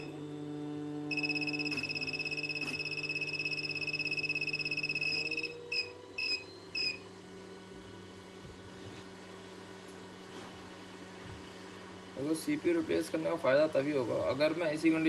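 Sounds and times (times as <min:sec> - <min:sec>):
short electronic beeps: 0:01.1 - 0:07.0
long high pulsing beep: 0:01.1 - 0:07.1.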